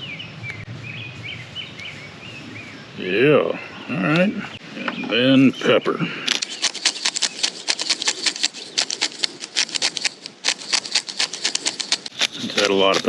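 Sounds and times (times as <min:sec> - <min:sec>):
pepper grinder grinding clicks: 0:06.4 - 0:12.2.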